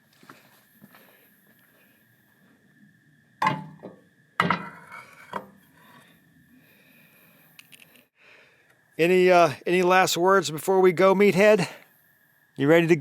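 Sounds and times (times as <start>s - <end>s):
faint high hum: 0.0s - 13.0s
hard objects knocking and clattering: 3.4s - 5.5s.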